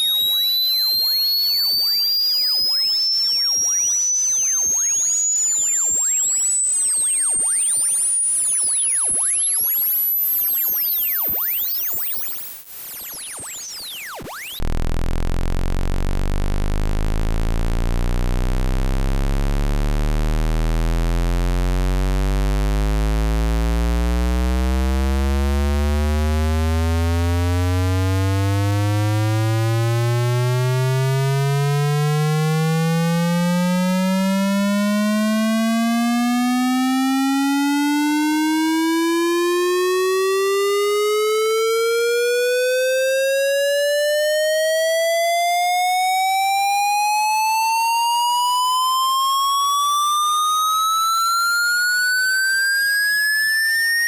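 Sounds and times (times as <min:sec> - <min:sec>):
high-pitched rising tone: 0:00.0 - 0:14.8
low buzzing rising tone: 0:00.0 - 0:37.0.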